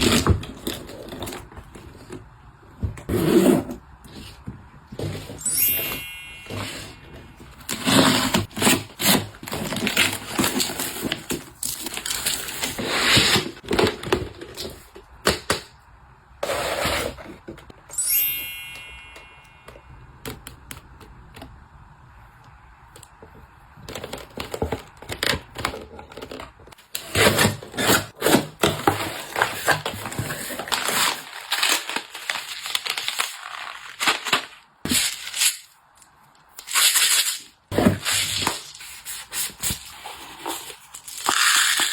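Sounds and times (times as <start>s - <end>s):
items clicking and knocking: 23.0s - 27.4s.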